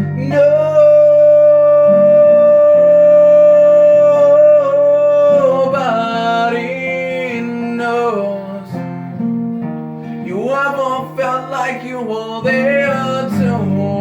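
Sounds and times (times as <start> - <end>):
person singing: 0.0 - 8.8, 10.2 - 14.0
acoustic guitar chords: 0.0 - 14.0.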